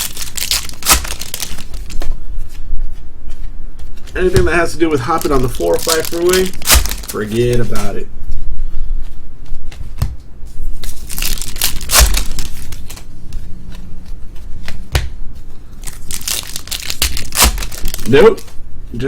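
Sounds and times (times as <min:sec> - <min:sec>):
card wrappers tearing and rustling: 0:00.0 - 0:02.2, 0:04.0 - 0:08.0, 0:10.7 - 0:13.1, 0:15.8 - 0:18.6.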